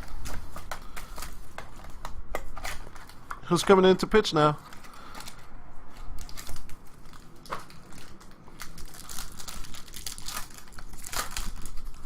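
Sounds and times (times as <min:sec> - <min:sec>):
card pack packaging crinkling: 0:00.0 - 0:12.0
packaging tearing open: 0:06.1 - 0:12.0.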